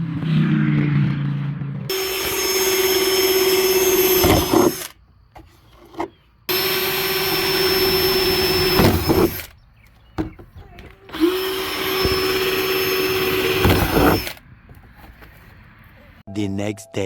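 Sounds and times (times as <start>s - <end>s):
power drill whining: 1.9s - 5.0s, 5.8s - 9.6s, 10.5s - 14.4s.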